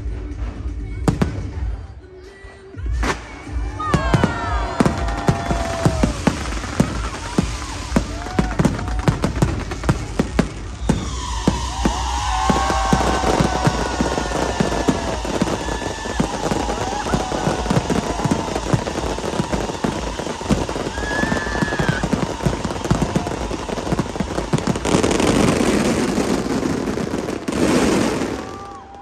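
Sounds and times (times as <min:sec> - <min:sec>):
fireworks bangs and crackles: 0:00.0 - 0:29.0
whistling fireworks: 0:00.0 - 0:29.0.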